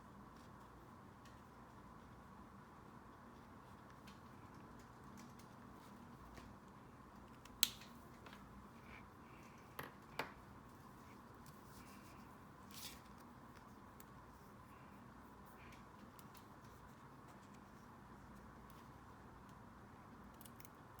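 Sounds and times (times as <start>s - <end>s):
faint room hum: 0.0s - 21.0s
paper rustle: 11.1s - 13.8s.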